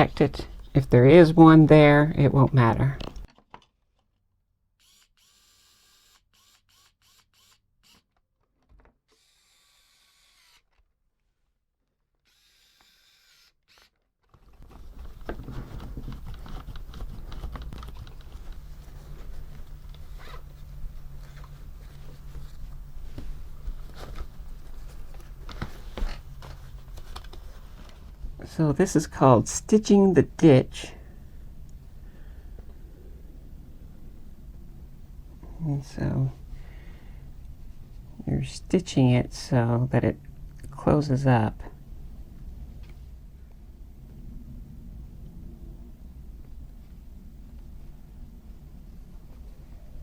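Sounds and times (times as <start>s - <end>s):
small electric motor humming: 4.8s - 8.0s, 9.1s - 10.7s, 12.2s - 13.9s.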